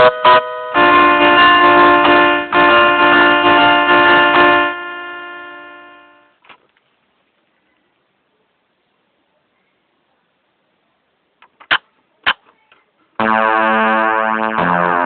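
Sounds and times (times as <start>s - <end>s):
ringtone chord: 0.0s - 6.3s, 13.2s - 15.0s.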